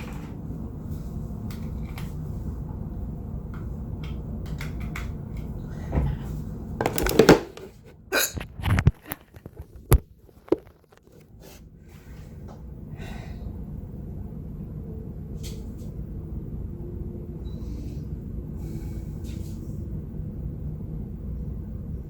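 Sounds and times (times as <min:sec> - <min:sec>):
steady low rumble: 0:00.0 - 0:06.8, 0:11.6 - 0:22.0.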